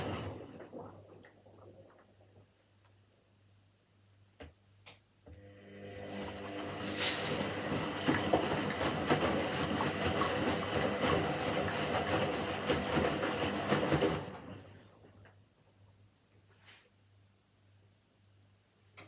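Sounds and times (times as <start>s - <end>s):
washing machine motor hum: 0.0s - 1.9s, 5.3s - 15.2s
laundry rattling in drum: 7.4s - 14.4s.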